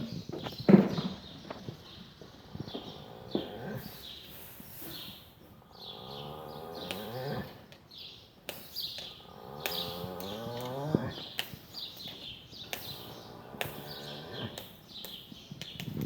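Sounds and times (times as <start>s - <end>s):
small birds chirping: 0.0s - 16.0s
horse snoring: 2.8s - 4.2s, 5.7s - 7.7s, 9.2s - 11.4s, 13.0s - 14.7s.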